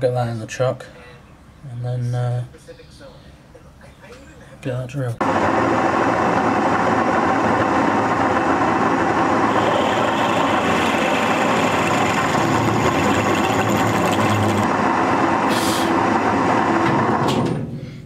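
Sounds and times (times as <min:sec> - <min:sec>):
milling machine drilling: 0:05.2 - 0:14.7.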